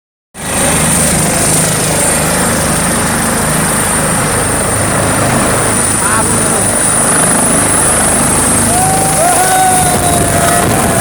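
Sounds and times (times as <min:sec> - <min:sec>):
helicopter engine and rotor drone: 0:00.4 - 0:11.0
high whine: 0:05.0 - 0:11.0.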